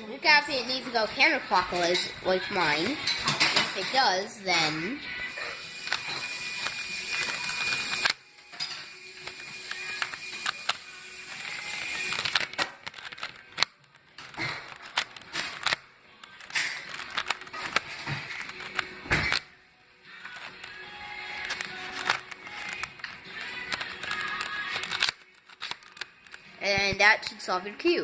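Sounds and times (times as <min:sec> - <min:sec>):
puzzle cube clicks and rattles: 0:05.6 - 0:08.2, 0:09.2 - 0:19.5, 0:20.1 - 0:27.3.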